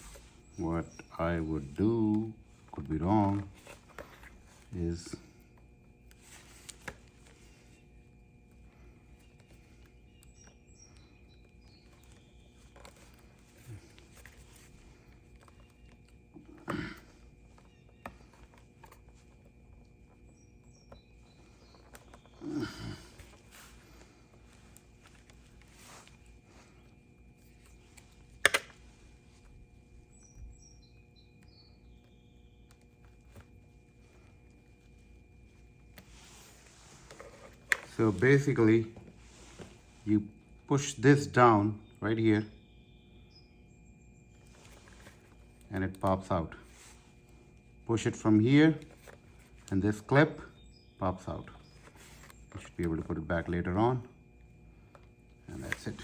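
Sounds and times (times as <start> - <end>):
faint steady hum: 0.0 - 56.0
faint high bird chirps: 8.7 - 23.2, 29.9 - 33.4, 41.6 - 45.4.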